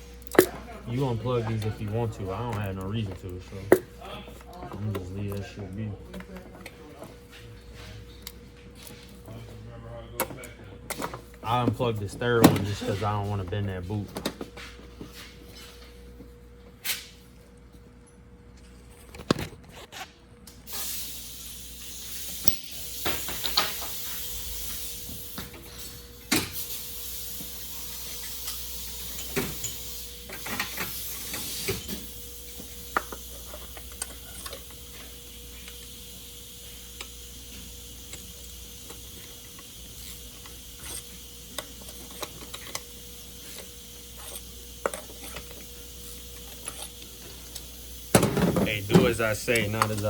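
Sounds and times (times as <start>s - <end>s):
tools clicking and knocking: 0.2s - 0.6s, 28.2s - 36.0s, 36.9s - 50.0s
steady hiss: 20.7s - 50.0s.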